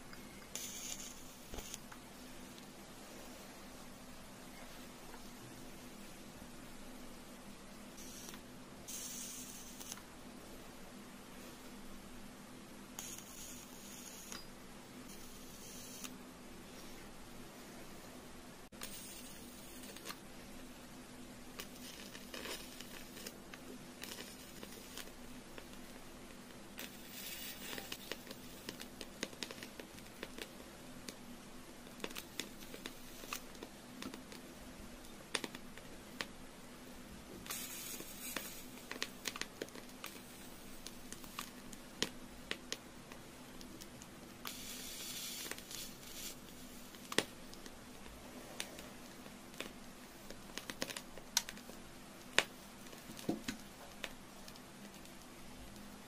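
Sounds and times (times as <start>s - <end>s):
faint low hum: 0.0s - 56.0s
candle crackling and popping: 0.2s - 2.7s, 8.0s - 10.1s, 13.0s - 14.5s, 18.7s - 20.3s, 21.4s - 36.4s, 37.4s - 56.0s.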